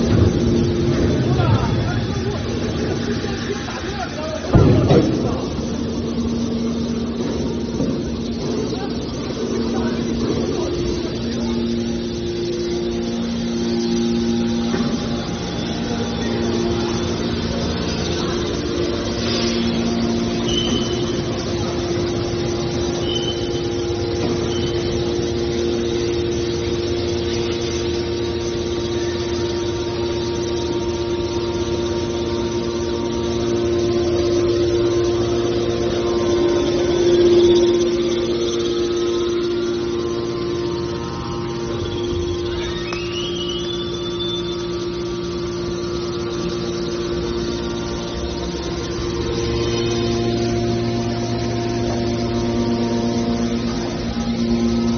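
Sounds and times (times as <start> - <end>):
hydraulic baler motor hum: 0.0 - 54.9
short high squeaks: 19.2 - 21.2, 41.6 - 44.8.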